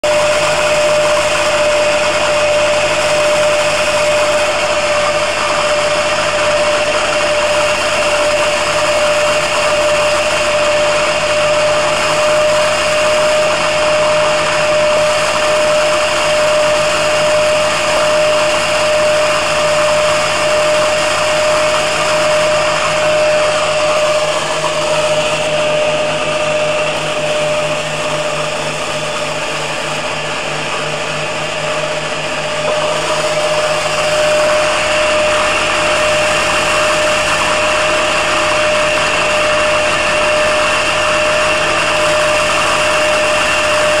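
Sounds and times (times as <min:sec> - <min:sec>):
washing machine spinning: 0:00.0 - 0:44.0.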